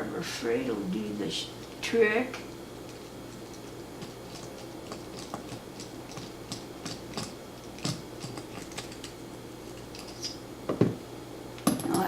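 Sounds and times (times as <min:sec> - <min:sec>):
small objects clicking and tapping: 0:02.9 - 0:10.9.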